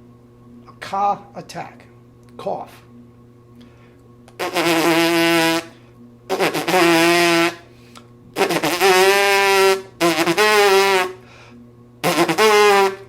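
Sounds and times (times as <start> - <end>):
trumpet playing held notes: 4.4 - 7.7, 8.4 - 11.2, 12.0 - 13.0.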